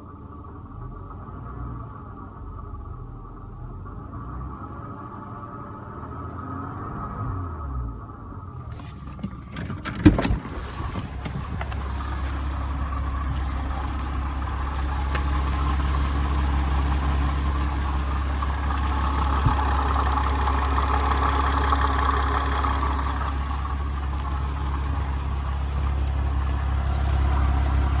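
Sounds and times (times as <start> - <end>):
car engine winding down: 0.9 - 28.0
car engine idling: 8.5 - 28.0
engine cranking and starting: 8.6 - 28.0.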